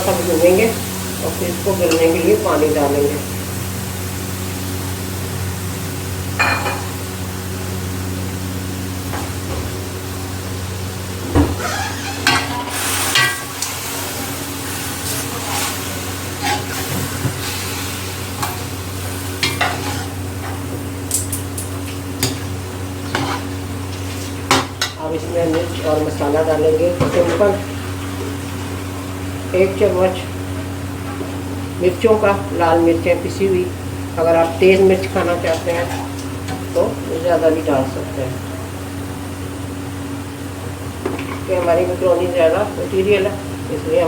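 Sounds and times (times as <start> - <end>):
meat and tomatoes sizzling in oil: 0.0 - 37.8
steady low hum: 0.0 - 44.0
spoon scraping a pot: 19.4 - 20.2, 23.1 - 23.5.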